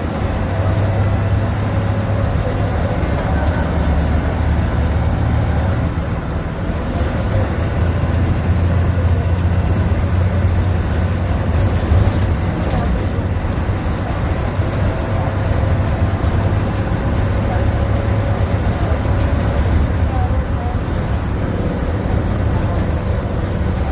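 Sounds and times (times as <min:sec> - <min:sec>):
bus diesel engine droning: 0:00.0 - 0:23.9.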